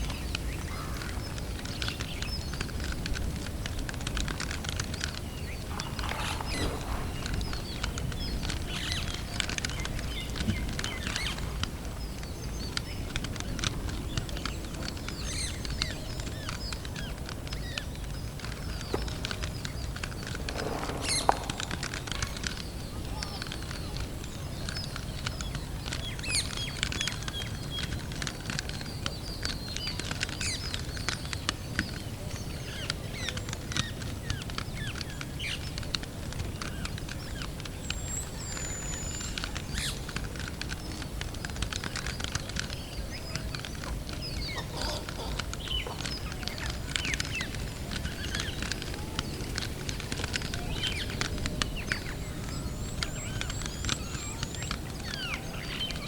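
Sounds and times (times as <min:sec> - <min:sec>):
small birds chirping: 0:00.0 - 0:56.0
steady low rumble: 0:18.6 - 0:23.4.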